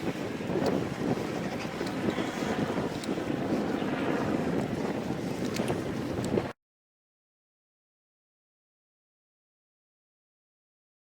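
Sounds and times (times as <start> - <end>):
helicopters rumbling overhead: 0.0 - 6.5
wind buffeting microphone: 0.0 - 6.6.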